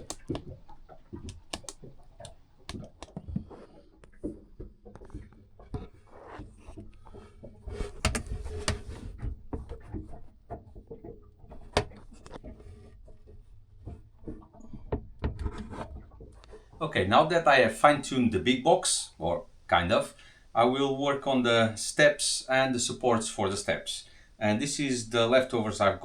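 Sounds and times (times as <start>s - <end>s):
wooden pieces knocking: 0.0s - 2.9s, 7.9s - 9.0s.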